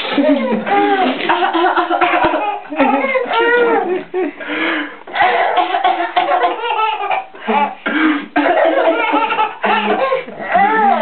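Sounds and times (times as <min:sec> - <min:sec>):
child laughing: 0:00.0 - 0:04.3, 0:05.1 - 0:07.8
child coughing: 0:05.2 - 0:06.6, 0:07.6 - 0:10.2.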